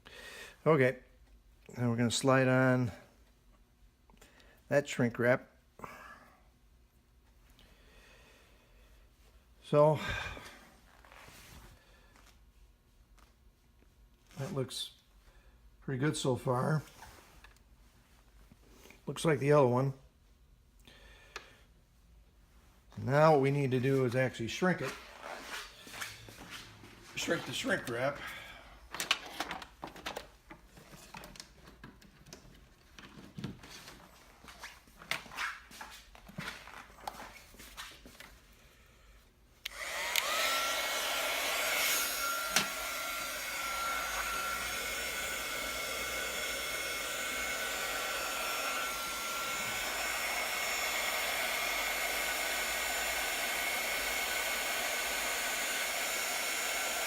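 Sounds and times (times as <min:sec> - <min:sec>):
heat gun blowing with faint whine: 0:39.6 - 0:57.0.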